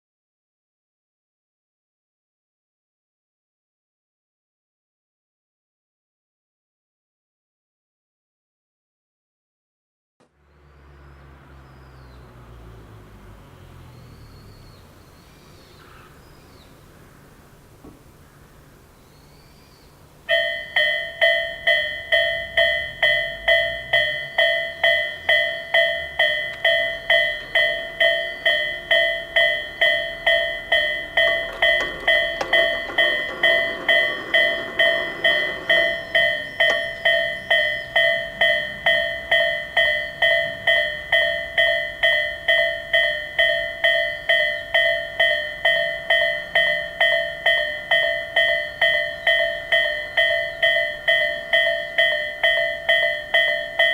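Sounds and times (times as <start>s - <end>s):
electronic railway crossing bell: 20.2s - 53.9s
train rumbling over rails: 21.2s - 43.0s
clicks of train wheels: 22.5s - 40.9s.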